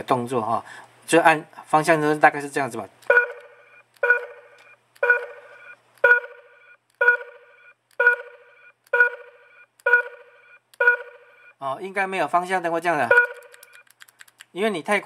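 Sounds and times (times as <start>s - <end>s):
short electronic beeps: 3.1s - 11.6s, 13.1s - 13.8s.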